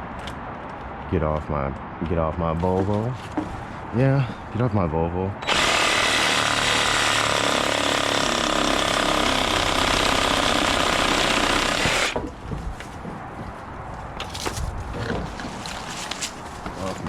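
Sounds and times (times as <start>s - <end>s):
chainsaw cutting tree limbs: 5.4s - 12.2s.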